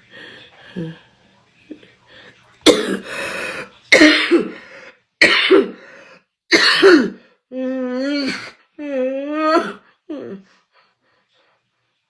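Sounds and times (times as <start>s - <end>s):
woman coughing: 2.6s - 4.6s, 5.2s - 5.8s, 6.5s - 7.2s, 8.0s - 8.6s, 9.5s - 9.8s.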